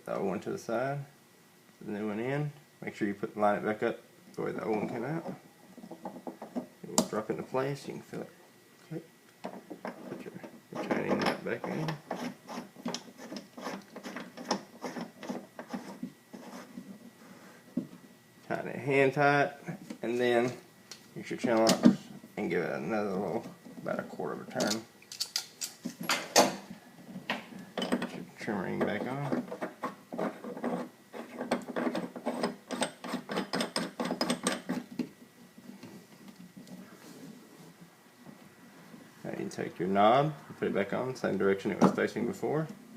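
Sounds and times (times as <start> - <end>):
nut threading clicks and scrapes: 9.3 - 16.8, 28.8 - 35.1.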